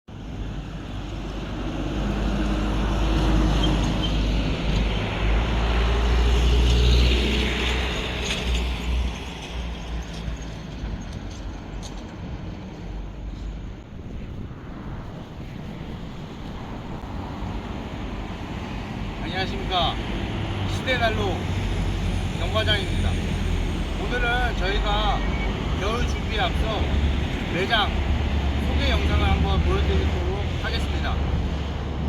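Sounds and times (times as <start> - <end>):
road vehicle passing by: 0.2 - 32.0.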